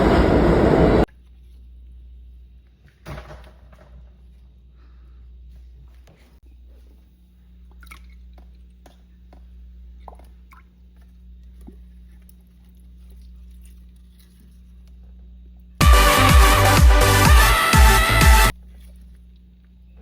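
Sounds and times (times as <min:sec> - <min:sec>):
low hum: 0:00.0 - 0:02.6
electronic dance music: 0:15.8 - 0:18.5.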